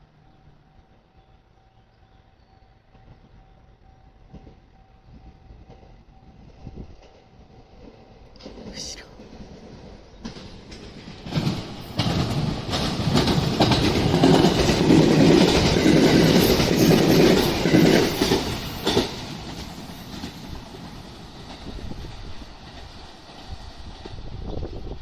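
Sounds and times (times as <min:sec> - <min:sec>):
train rumble: 0:00.0 - 0:25.0
train wheels clattering over rail joints: 0:09.3 - 0:25.0.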